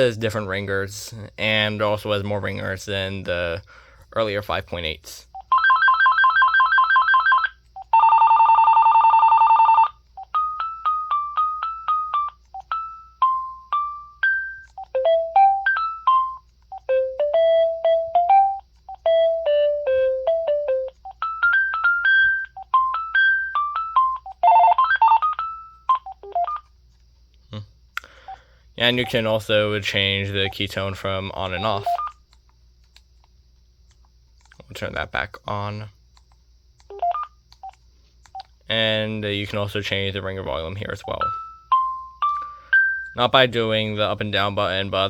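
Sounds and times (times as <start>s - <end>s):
beeping single-note melodies: 10.3s - 26.6s.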